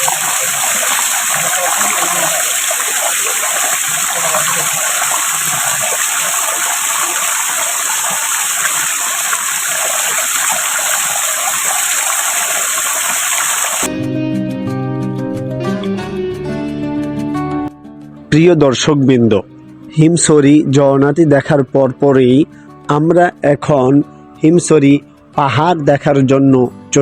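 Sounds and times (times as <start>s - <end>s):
waterfall rushing and splashing: 0.0s - 13.9s.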